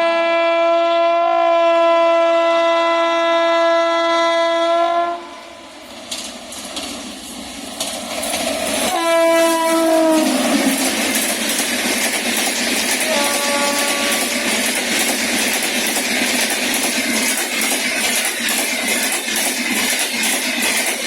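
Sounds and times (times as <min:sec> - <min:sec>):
locomotive horn blast: 0:00.0 - 0:05.6, 0:08.9 - 0:10.8, 0:13.0 - 0:14.5
train wheels clattering on rails: 0:05.8 - 0:21.0.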